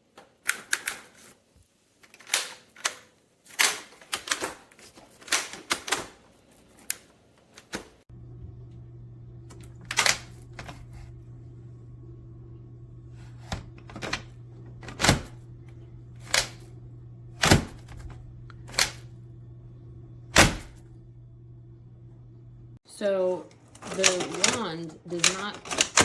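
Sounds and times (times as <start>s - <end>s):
steady low hum: 8.1s - 22.8s.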